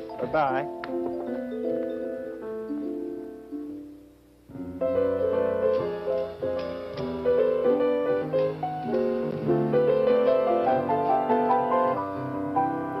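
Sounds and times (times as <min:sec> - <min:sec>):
solo piano run: 0:04.5 - 0:13.0.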